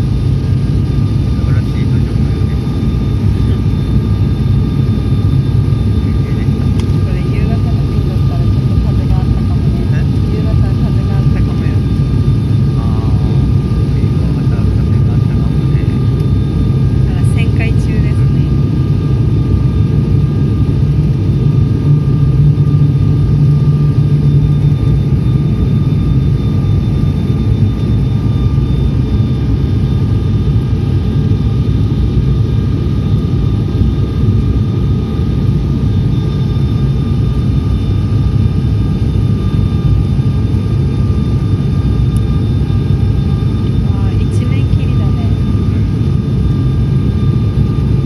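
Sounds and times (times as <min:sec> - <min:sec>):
airplane cabin low rumble: 0:00.0 - 0:48.0.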